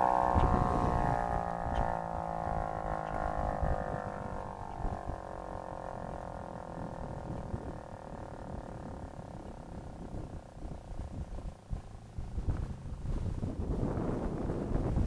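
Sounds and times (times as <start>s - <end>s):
warning siren winding down: 0.0s - 7.8s
low rumble: 0.0s - 15.0s.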